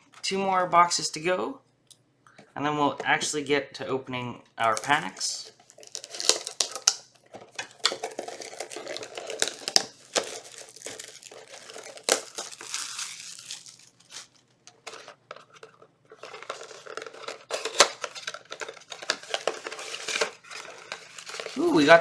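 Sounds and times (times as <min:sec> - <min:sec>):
rustles and clicks of handling: 0:04.5 - 0:21.6
packaging crinkling and tearing: 0:04.6 - 0:22.0.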